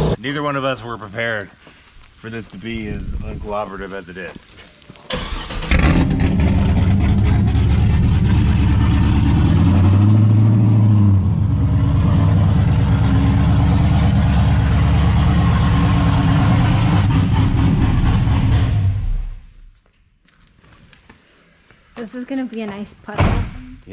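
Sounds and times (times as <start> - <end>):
car engine revving hard: 5.3 - 19.4.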